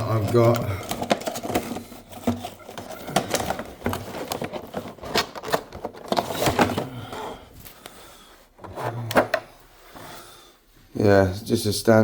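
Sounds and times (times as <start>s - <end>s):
packaging crinkling and clicking: 0.0s - 7.2s.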